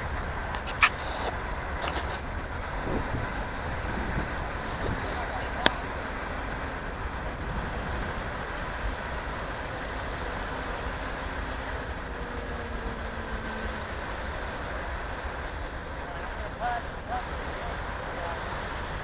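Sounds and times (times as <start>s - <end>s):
wind buffeting microphone: 0.0s - 19.0s
model airplane motor whine: 9.4s - 15.9s.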